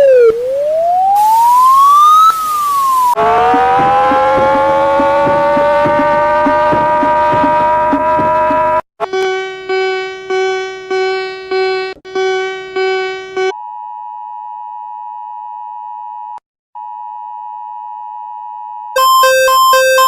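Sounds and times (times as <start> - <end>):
steady high alert tone: 0.0 - 5.4, 19.0 - 20.0
repeated pitched alarm beeps: 19.0 - 20.0.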